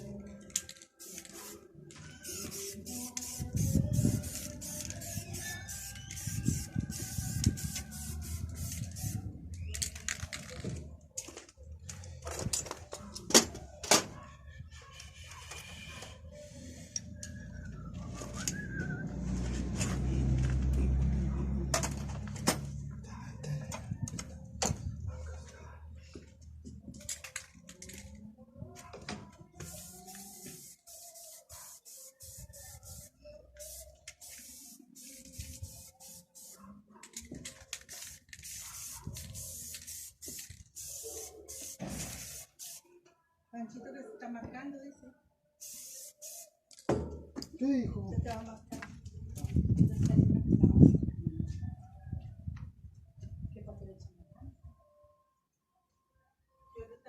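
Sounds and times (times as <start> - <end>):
short hissing sprays: 38.4 - 42.8, 45.6 - 46.5.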